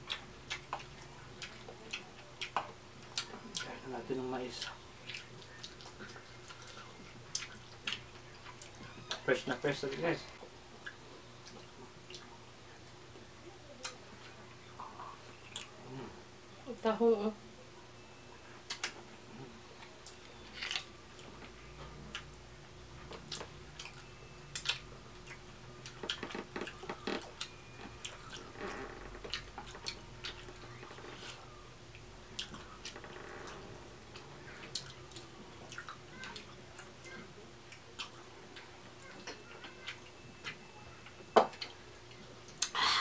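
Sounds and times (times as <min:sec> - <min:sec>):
chewing: 0:00.0 - 0:03.8, 0:04.5 - 0:09.3, 0:23.0 - 0:42.7.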